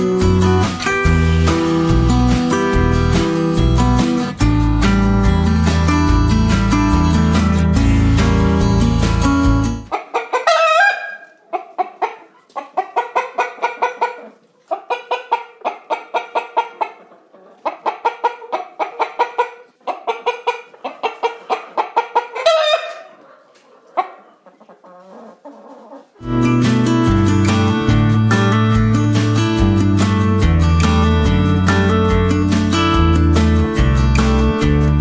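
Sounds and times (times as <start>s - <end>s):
chickens clucking: 9.7s - 28.1s
chicken squawk: 9.9s - 26.2s.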